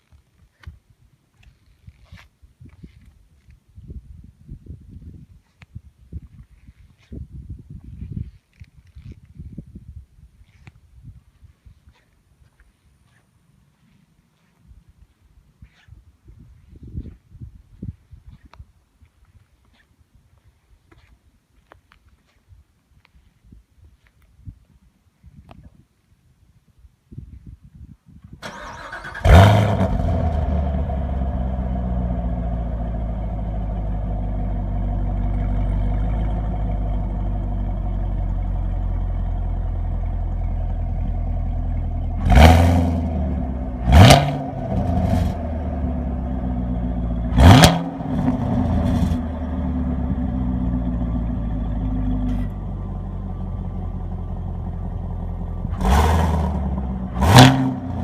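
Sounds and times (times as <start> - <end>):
starter cranking engine: 28.4 - 29.6
car engine idling and revving: 28.7 - 58.0.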